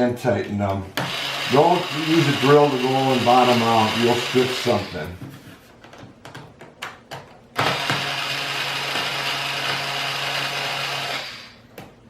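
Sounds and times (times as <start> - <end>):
electric drill driving screw: 1.0 - 5.1, 7.6 - 11.7.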